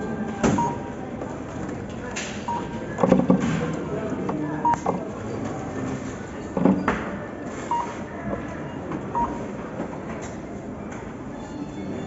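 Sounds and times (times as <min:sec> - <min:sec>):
background clatter and hum: 0:00.0 - 0:07.6.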